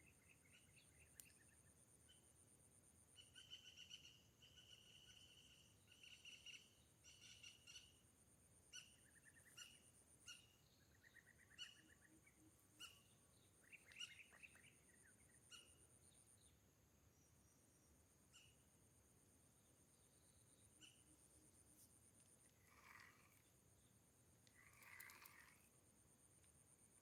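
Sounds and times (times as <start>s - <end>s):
faint wild birds calling: 0.0s - 27.0s
high insect tone: 20.2s - 25.9s.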